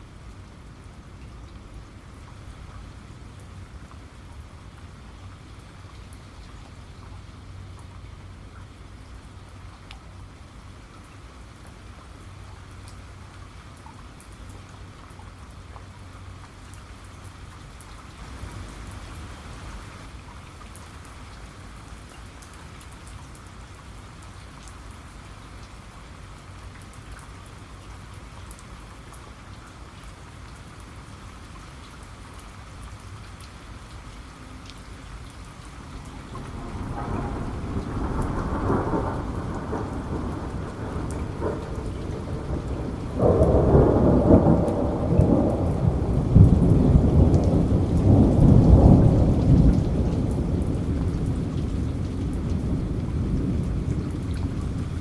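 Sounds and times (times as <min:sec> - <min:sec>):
steady rain: 0:00.0 - 0:55.0
thunder rumble: 0:36.1 - 0:55.0.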